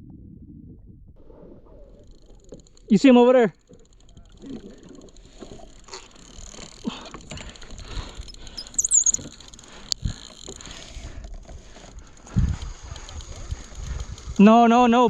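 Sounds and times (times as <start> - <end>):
water splashing against kayak hull: 1.2 - 14.4
sharp click: 8.2 - 9.4
high chirp: 8.3 - 9.2.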